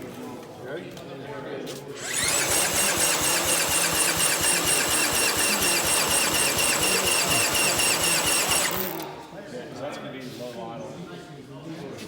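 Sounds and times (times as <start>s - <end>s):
small engine running steadily: 2.0s - 9.1s.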